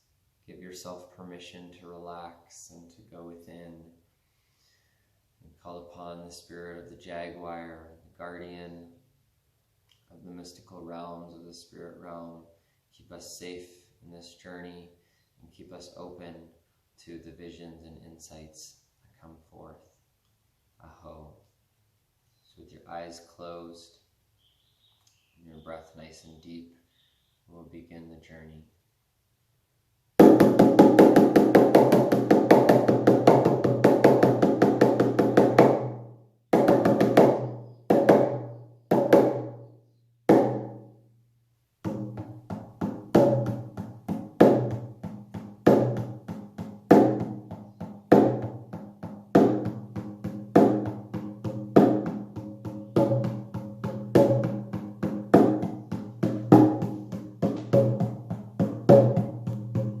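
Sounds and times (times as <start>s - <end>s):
hand drum struck with beater: 30.2s - 36.0s, 36.6s - 39.6s, 40.3s - 40.8s, 41.9s - 60.0s.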